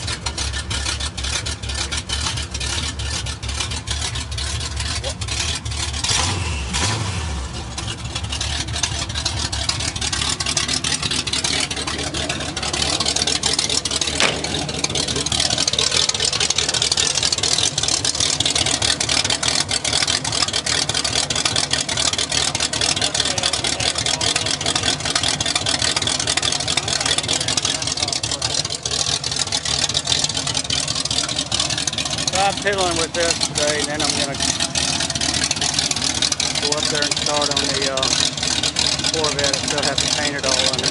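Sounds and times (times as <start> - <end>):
engine idling choppily: 0.0 - 40.9.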